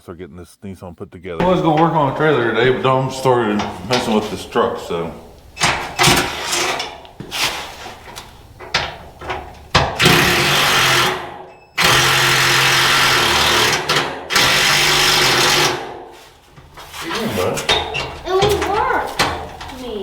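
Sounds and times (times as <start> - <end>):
handheld power tool running: 9.9 - 15.8.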